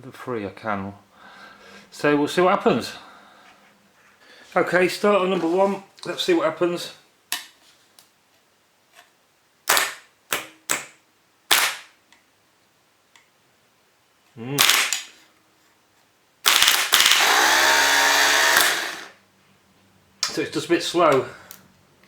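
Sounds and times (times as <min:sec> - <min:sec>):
starter motor spinning: 0:16.6 - 0:19.2.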